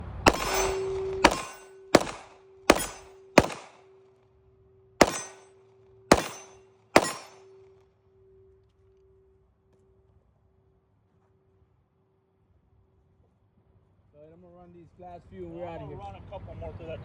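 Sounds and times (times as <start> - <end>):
echoing gunshots: 0.0 - 3.9, 5.0 - 5.4, 6.1 - 7.5.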